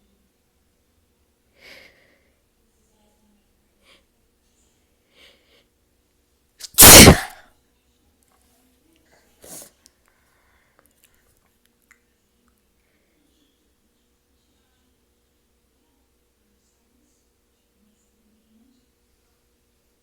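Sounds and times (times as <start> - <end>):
person sneezing: 6.6 - 7.4
faint breaths: 9.1 - 11.4.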